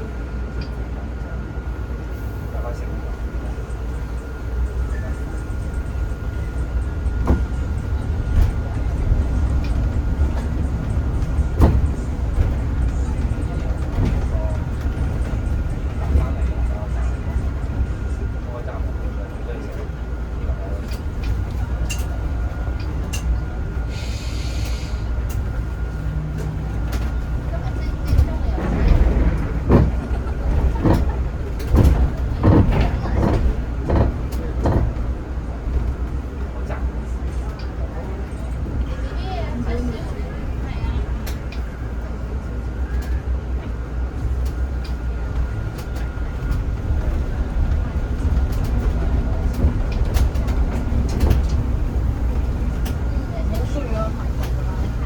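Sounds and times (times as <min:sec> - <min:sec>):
bus engine low rumble: 0:00.0 - 0:55.0
rattles and clicks: 0:26.4 - 0:36.9, 0:44.3 - 0:55.0.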